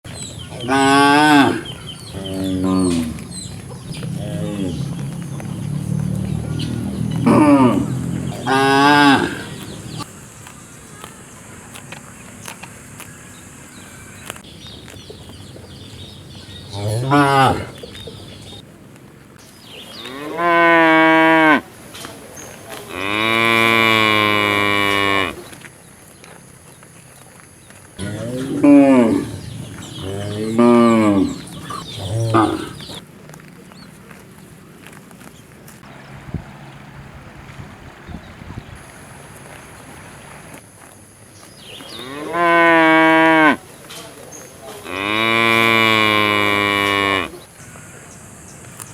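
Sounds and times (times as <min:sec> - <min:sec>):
cow mooing: 0:00.5 - 0:10.0, 0:16.7 - 0:17.8, 0:20.0 - 0:21.6, 0:22.9 - 0:25.5, 0:28.0 - 0:33.0, 0:42.0 - 0:43.6, 0:44.8 - 0:47.4.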